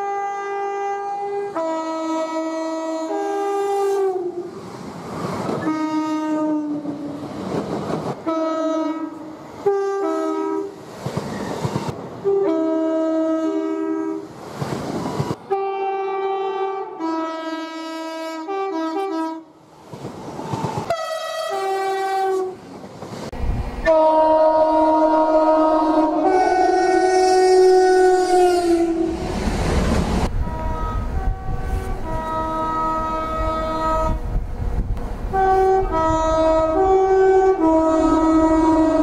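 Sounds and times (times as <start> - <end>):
two-tone train horn: 0.0 - 4.6, 5.6 - 7.2, 8.2 - 10.8, 12.2 - 14.3, 15.4 - 19.6, 20.9 - 22.6, 23.8 - 29.4, 30.3 - 34.3, 35.3 - 39.0
trains passing at speed: 0.0 - 39.0.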